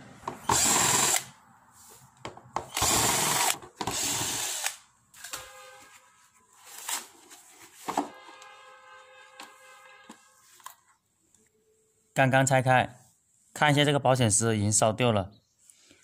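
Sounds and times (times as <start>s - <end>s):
electric screwdriver whirring: 0.4s - 1.3s, 2.7s - 4.8s.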